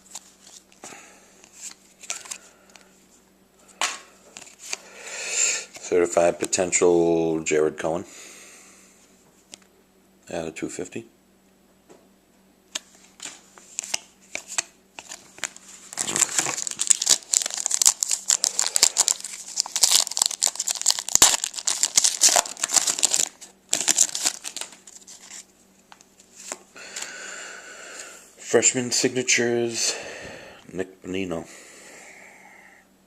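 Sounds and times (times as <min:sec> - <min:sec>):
crinkly packaging crackling: 0:13.8 - 0:25.5.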